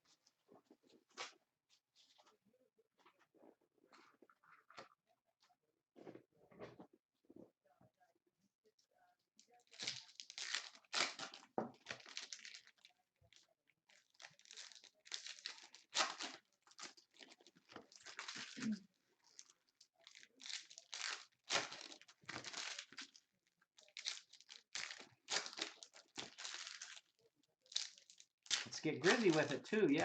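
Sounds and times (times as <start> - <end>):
plastic wrappers tearing and crinkling: 9.6 - 30.0.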